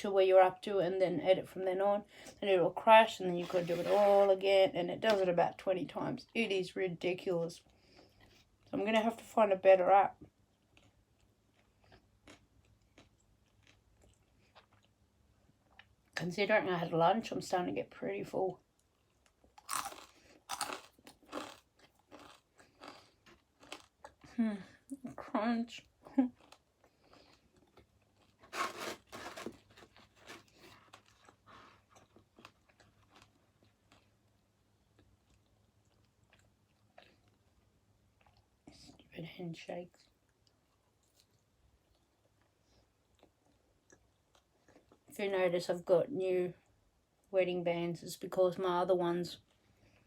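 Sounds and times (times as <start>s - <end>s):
faint chewing: 10.5s - 16.2s, 18.8s - 25.2s, 26.0s - 39.1s, 39.9s - 45.1s.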